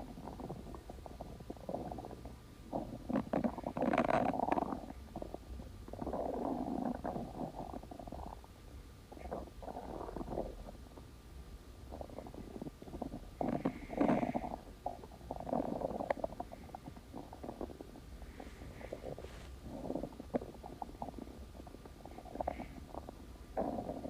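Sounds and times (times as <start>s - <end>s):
stomach growling: 0.0s - 8.5s, 9.1s - 11.1s, 11.9s - 24.0s.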